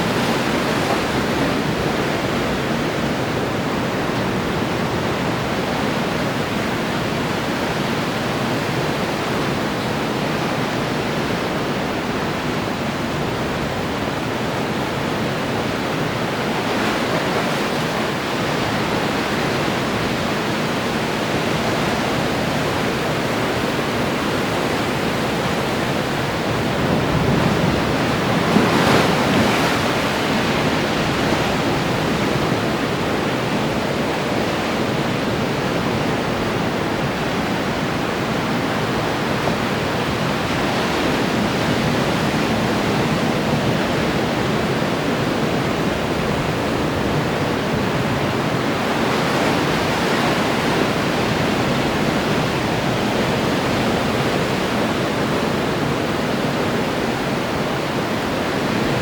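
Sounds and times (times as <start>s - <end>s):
ocean surf breaking: 0.0s - 59.0s
loud wave crashing: 26.9s - 31.2s.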